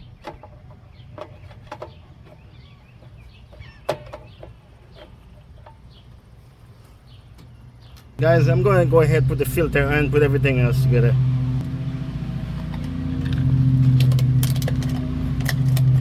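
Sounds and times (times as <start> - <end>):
mower parts clicking and knocking: 0.0 - 8.1, 12.5 - 16.0
birds chirping: 0.0 - 14.4
low hum: 8.2 - 16.0.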